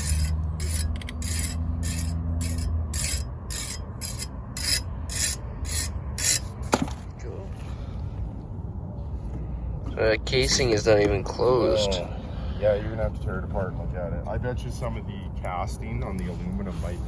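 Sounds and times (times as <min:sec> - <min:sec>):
rhythmic rasping strokes: 0:00.0 - 0:06.6
steady low hum: 0:00.0 - 0:17.0.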